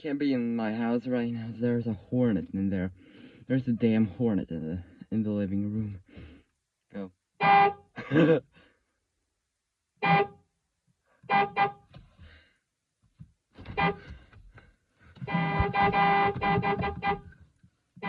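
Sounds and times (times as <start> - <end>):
car horn honking: 7.4 - 7.9, 10.0 - 10.4, 11.3 - 11.9, 13.6 - 14.2, 15.2 - 17.4.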